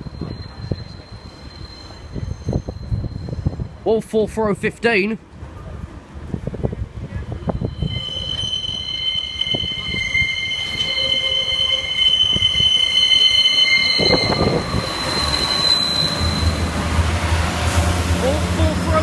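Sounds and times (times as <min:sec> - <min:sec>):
train wheels squealing on rails: 0:00.0 - 0:03.8, 0:07.2 - 0:16.8
train rumble and clatter: 0:05.2 - 0:19.0.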